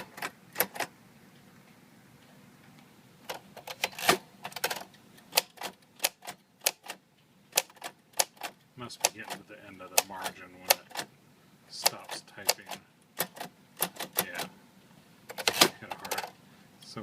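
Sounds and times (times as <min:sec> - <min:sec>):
manual typewriter keys clacking: 0:03.3 - 0:11.1, 0:11.8 - 0:14.5, 0:15.3 - 0:16.4.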